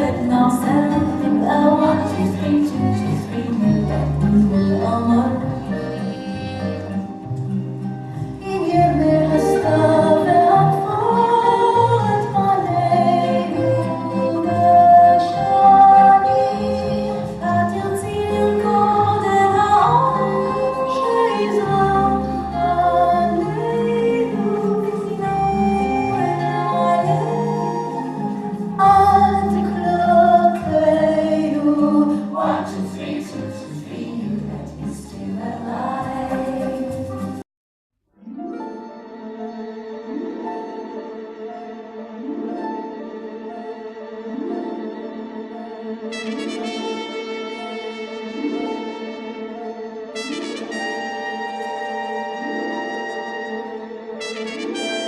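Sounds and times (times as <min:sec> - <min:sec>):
song with sung melody: 0:00.0 - 0:07.2, 0:08.0 - 0:37.4
bass line: 0:00.0 - 0:11.1, 0:11.8 - 0:37.4
choir-like singing: 0:08.4 - 0:37.4.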